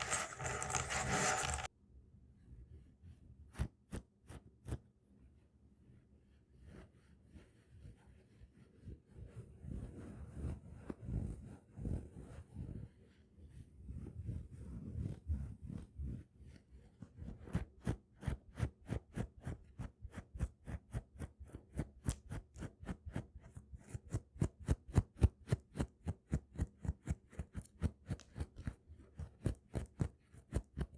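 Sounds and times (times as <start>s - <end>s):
fingernails scratching: 0.0s - 1.7s.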